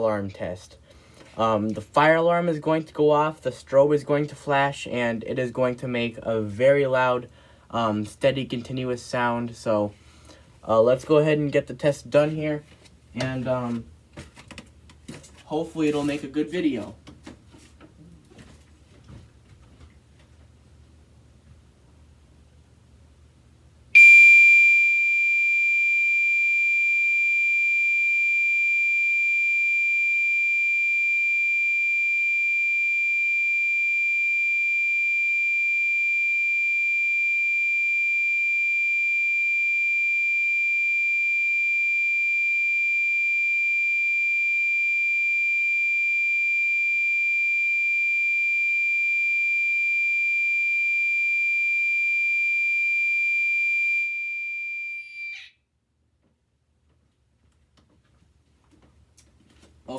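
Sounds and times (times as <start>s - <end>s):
fire alarm steady high tone: 24.0s - 55.6s.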